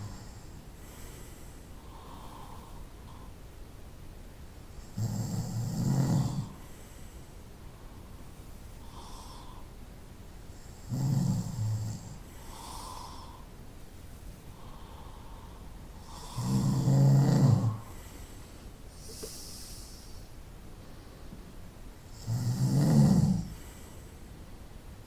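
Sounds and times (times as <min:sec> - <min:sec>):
soft breaths: 0:00.0 - 0:05.0, 0:06.2 - 0:22.4, 0:23.2 - 0:25.0
person snoring: 0:16.0 - 0:17.9, 0:22.2 - 0:23.7.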